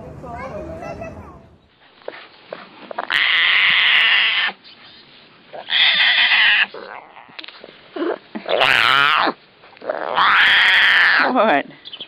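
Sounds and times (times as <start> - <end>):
animal raspy calls: 2.0 - 4.6, 5.5 - 12.0.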